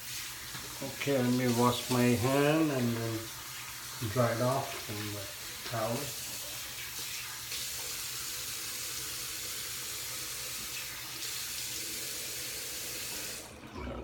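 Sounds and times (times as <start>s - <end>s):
hands washing under water: 0.0s - 8.2s.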